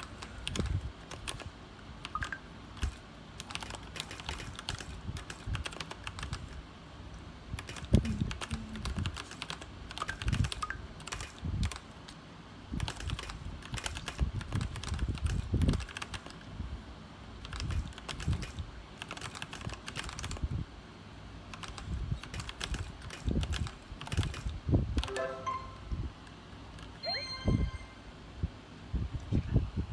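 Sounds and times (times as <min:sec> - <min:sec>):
mechanical keyboard typing: 0:00.0 - 0:06.6, 0:07.6 - 0:12.0, 0:12.8 - 0:16.4, 0:17.4 - 0:20.5, 0:21.5 - 0:25.6.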